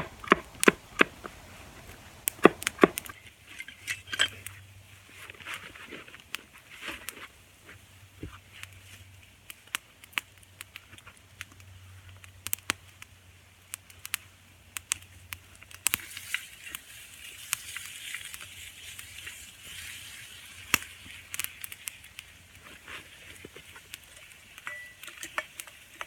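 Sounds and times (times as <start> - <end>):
campfire crackling and popping: 0.0 - 26.0
meat sizzling in a pan: 15.8 - 26.0.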